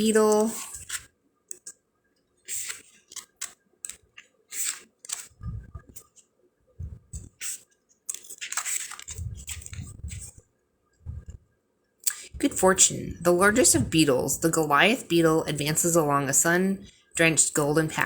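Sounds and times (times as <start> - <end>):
pages rustling and flicking: 0.4 - 1.8, 2.4 - 6.3, 6.9 - 10.4
soft bumps: 5.4 - 6.0, 6.8 - 7.3, 11.0 - 11.4.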